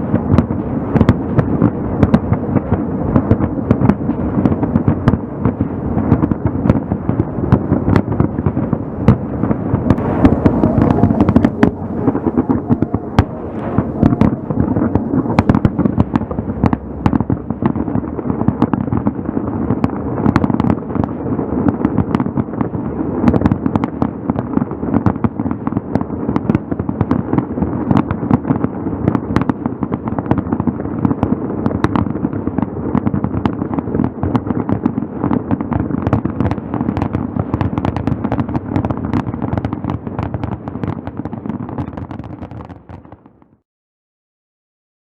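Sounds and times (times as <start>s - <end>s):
fireworks bangs and crackling: 0.0s - 43.5s
steady rumble: 8.7s - 20.1s.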